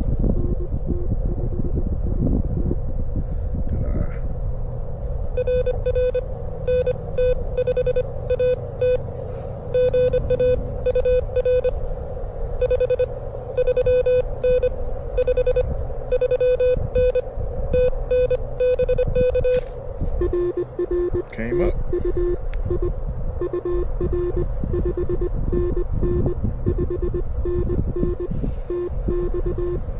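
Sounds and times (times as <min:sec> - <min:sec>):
wind rumble on microphone: 0:00.0 - 0:29.9
morse code beeps: 0:05.4 - 0:09.1, 0:09.7 - 0:11.8, 0:12.6 - 0:19.6, 0:20.2 - 0:29.9.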